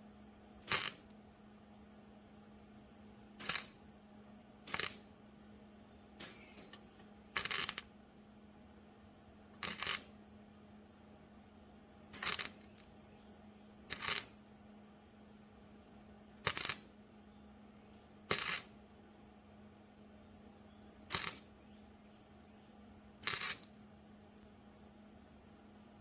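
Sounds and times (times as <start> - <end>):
welder crackling: 0.6 - 1.2, 3.4 - 3.9, 4.6 - 5.2, 6.2 - 8.0, 9.5 - 10.3, 12.1 - 12.9, 13.9 - 14.4, 16.4 - 17.0, 18.2 - 18.8, 21.0 - 21.7, 23.2 - 23.8.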